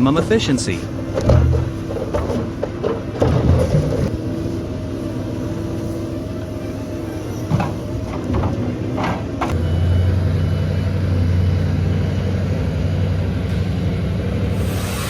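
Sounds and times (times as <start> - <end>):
heavy machine engine running: 0.0 - 15.0
knocks: 1.2 - 4.0
faint intermittent beeping: 9.5 - 13.2.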